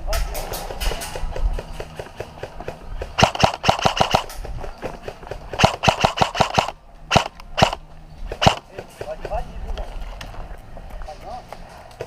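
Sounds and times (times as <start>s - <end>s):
airsoft rifle shots: 0.6s - 9.2s.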